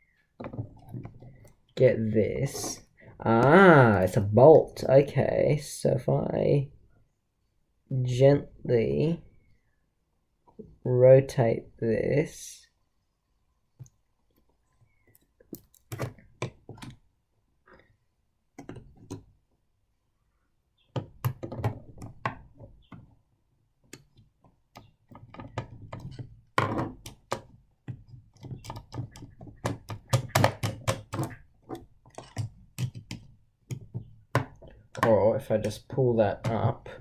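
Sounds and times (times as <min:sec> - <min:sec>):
small tools clicking and tapping: 0:23.8 - 0:35.8.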